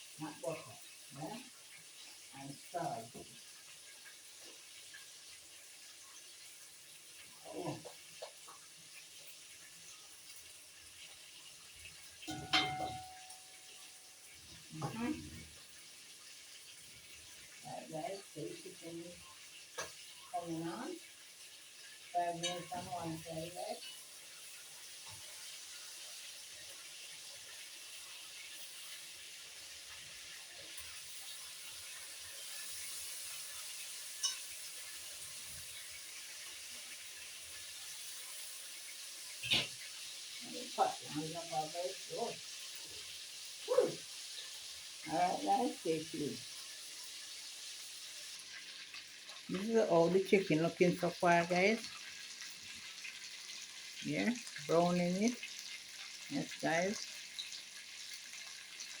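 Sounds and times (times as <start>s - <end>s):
chicken frying in oil: 0.0s - 59.0s
metal cookware ringing: 12.2s - 14.1s, 22.2s - 23.2s, 34.2s - 34.5s.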